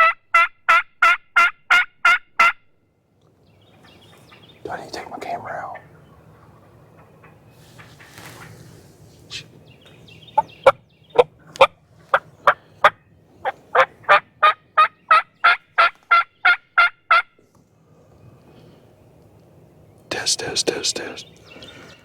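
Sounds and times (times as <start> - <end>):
wild turkey yelps: 10.4 - 17.3.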